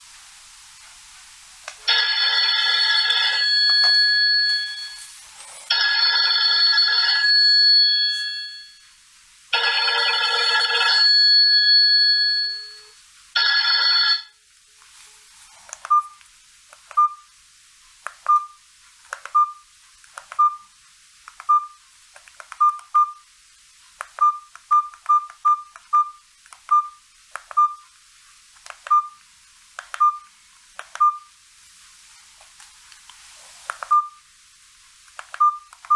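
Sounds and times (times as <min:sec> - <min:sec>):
phone ringtone melody: 0:01.9 - 0:05.1, 0:05.7 - 0:08.8, 0:09.6 - 0:14.3
keypad beeps: 0:15.8 - 0:16.2, 0:16.9 - 0:17.3, 0:18.2 - 0:18.6, 0:19.2 - 0:19.6, 0:20.2 - 0:20.7, 0:21.4 - 0:21.8, 0:22.5 - 0:23.2, 0:24.1 - 0:27.9, 0:28.8 - 0:29.2, 0:29.8 - 0:31.3, 0:33.8 - 0:34.2, 0:35.2 - 0:35.9.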